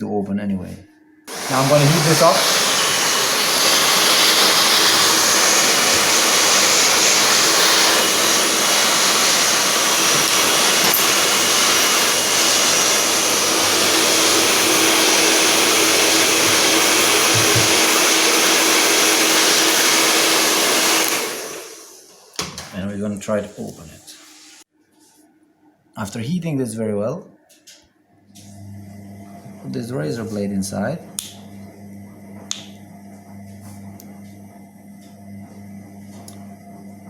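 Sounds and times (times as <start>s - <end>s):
hair dryer blowing: 1.3s - 22.4s.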